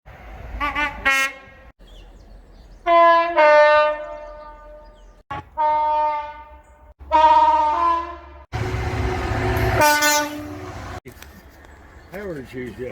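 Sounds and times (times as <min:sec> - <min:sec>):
train horn blasts: 0:02.9 - 0:11.0.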